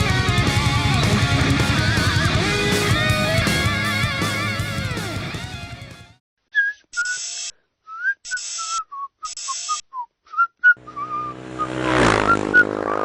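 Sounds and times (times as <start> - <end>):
person whistling a tune: 6.6 - 7.2, 7.9 - 11.3.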